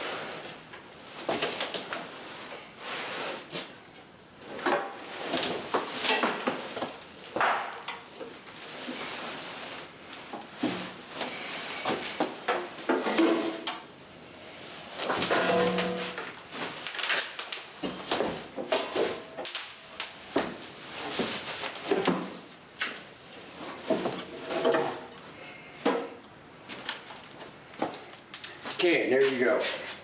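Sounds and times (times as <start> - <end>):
knocks and clatters of parts handled: 4.5 - 8.5, 10.2 - 13.9, 15.0 - 23.1
cardboard packing shifted: 4.5 - 13.6, 14.8 - 25.3.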